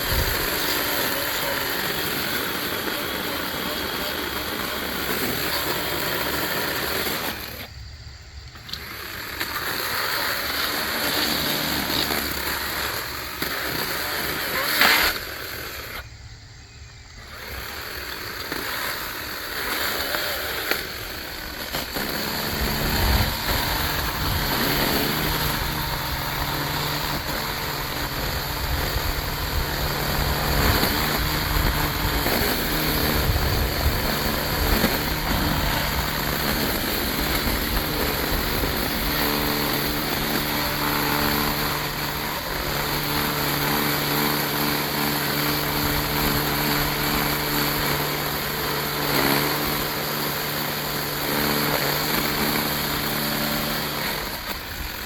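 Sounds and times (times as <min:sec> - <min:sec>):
aircraft engine drone: 0:20.8 - 0:44.8.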